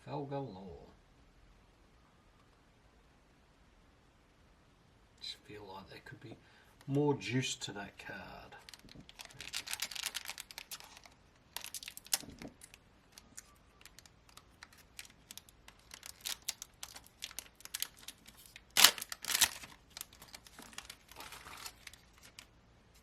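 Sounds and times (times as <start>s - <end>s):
foil wrapper tearing and crinkling: 8.6s - 23.0s.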